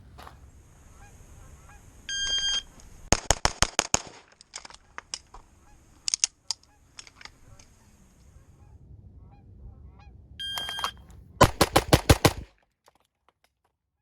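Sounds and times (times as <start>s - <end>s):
faint sharp cracks: 0.0s - 0.5s, 2.2s - 8.3s
pistol shots: 3.1s - 4.3s, 10.6s - 12.5s
shot timer beep: 10.4s - 11.0s.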